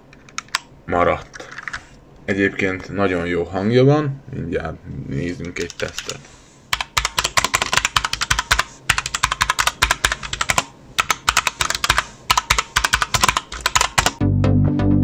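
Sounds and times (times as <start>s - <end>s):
mechanical keyboard typing: 5.4s - 14.2s
electronic music: 14.2s - 15.0s.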